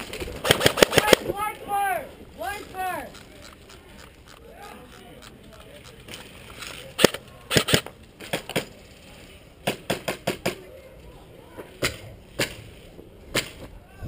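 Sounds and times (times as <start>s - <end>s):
airsoft guns firing: 0.0s - 1.4s, 6.9s - 8.7s.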